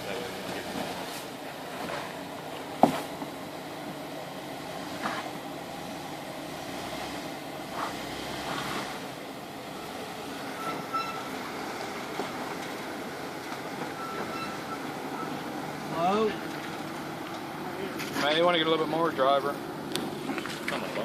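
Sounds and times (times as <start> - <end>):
off-road engine running low: 0.0 - 21.0
high squeak: 10.6 - 11.3, 14.0 - 14.8.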